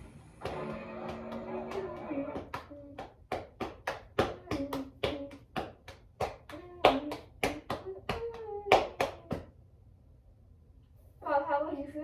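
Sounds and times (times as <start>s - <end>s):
hands clapping: 0.4s - 9.5s.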